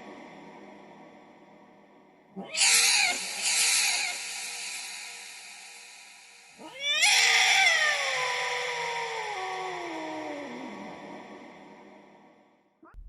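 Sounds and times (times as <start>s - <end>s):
cat meowing with reverb: 6.6s - 10.0s.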